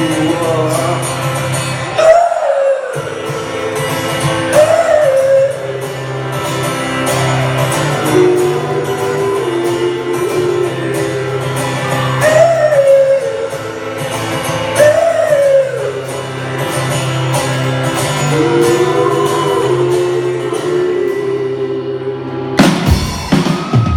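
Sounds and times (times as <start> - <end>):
guitars: 0.0 - 23.9
bass: 3.0 - 23.9
drum beat: 22.6 - 23.9.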